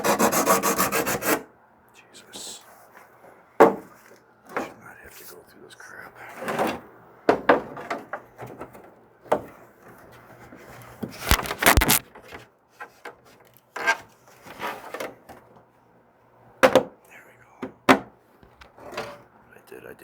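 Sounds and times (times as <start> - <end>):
plastic fitting rubbing on threads: 11.2 - 12.0.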